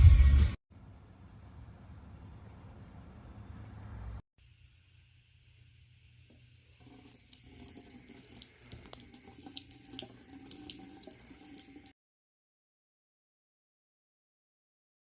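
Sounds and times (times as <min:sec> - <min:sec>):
faucet running into sink: 0:06.3 - 0:12.0
splashing drips: 0:06.8 - 0:11.9.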